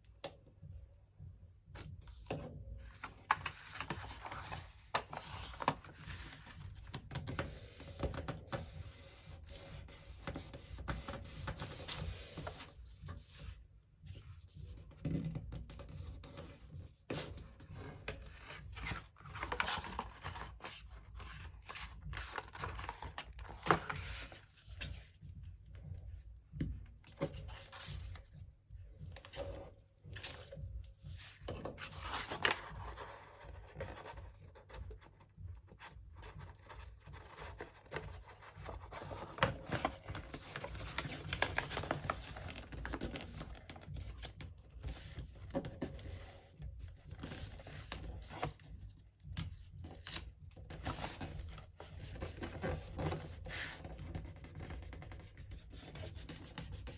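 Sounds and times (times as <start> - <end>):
cardboard and paper rustling: 2.1 - 13.6, 17.1 - 25.2, 29.0 - 46.4, 49.8 - 56.9.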